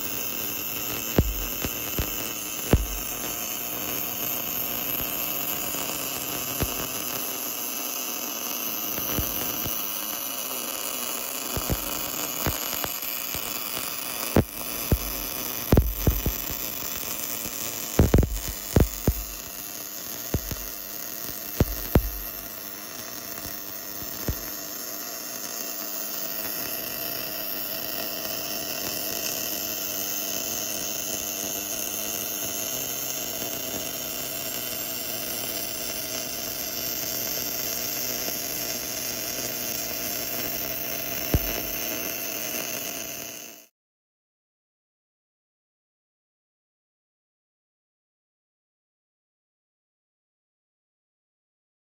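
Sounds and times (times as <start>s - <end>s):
welding machine hum and hiss: 0.0s - 43.7s
sharp knocks and pops: 1.1s - 3.3s, 11.6s - 13.4s, 14.4s - 16.6s, 18.0s - 19.5s, 20.3s - 20.7s, 21.6s - 22.4s, 24.2s - 24.4s, 41.3s - 41.7s.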